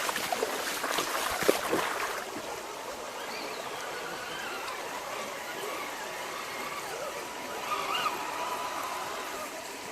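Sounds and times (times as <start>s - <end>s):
stream water running: 0.0s - 9.9s
small electric motor whine: 2.4s - 9.9s.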